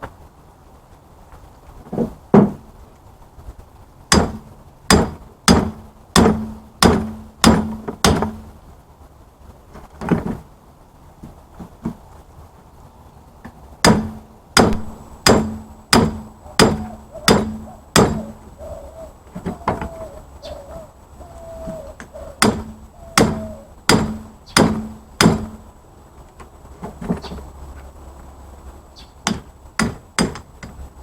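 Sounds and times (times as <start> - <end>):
hammer blows on metal: 13.8 - 18.5, 21.6 - 25.7
faint bird call: 16.3 - 23.8.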